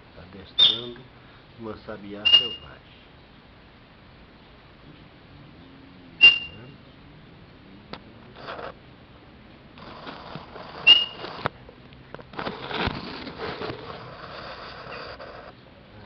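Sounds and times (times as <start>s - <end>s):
short high whistled note: 6.2s - 6.7s, 10.8s - 11.2s
rustling noise: 8.2s - 8.8s, 9.8s - 15.6s.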